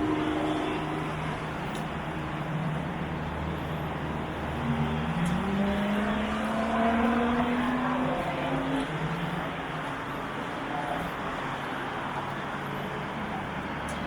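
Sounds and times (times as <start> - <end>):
vehicle engine accelerating: 0.0 - 9.5
road noise: 0.0 - 14.0.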